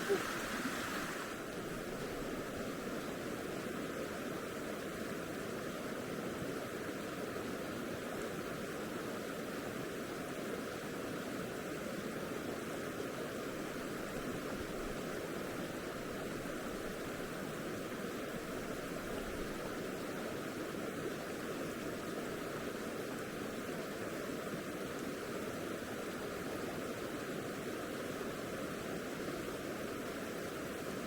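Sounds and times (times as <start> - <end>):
stream water rushing: 0.0 - 7.6.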